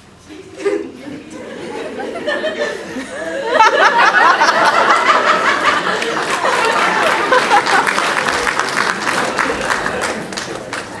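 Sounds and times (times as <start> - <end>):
audience laughing: 0.3 - 11.0
scattered clapping: 4.5 - 11.0.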